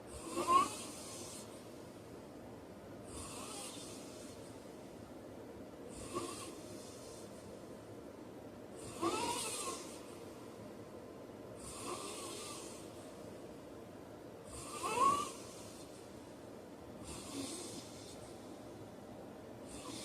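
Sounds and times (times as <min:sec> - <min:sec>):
man snoring: 0:00.2 - 0:01.5, 0:11.6 - 0:12.8, 0:14.5 - 0:15.7, 0:17.0 - 0:18.2, 0:19.7 - 0:20.0.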